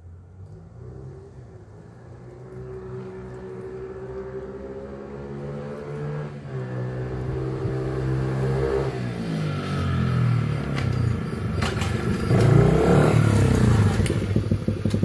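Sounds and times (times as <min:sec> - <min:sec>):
dirt bike engine revving: 0:03.0 - 0:10.6, 0:11.6 - 0:15.0.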